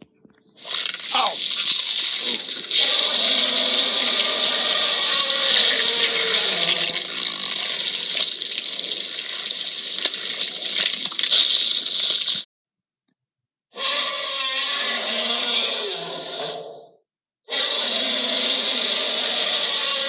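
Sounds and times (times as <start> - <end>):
loud steady hissing rush: 0.6 - 12.4.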